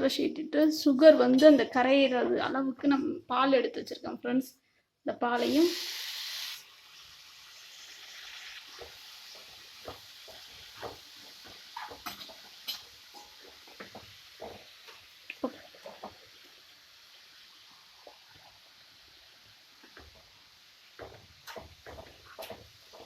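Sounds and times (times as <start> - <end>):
faint sizzle: 5.3 - 23.0.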